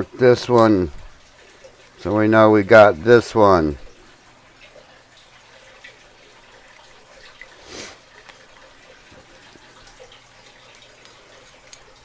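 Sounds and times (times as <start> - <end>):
handling noises: 10.2 - 12.0.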